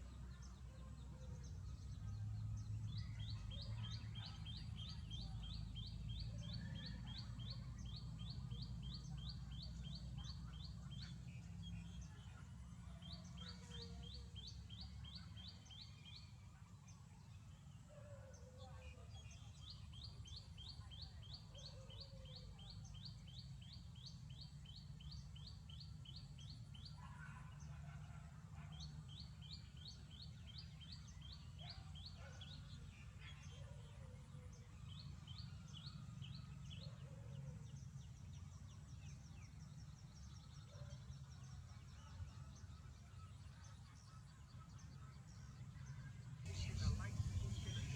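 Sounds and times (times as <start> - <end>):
baby birds chirping: 46.5 - 47.9
steady low rumble: 46.5 - 47.9.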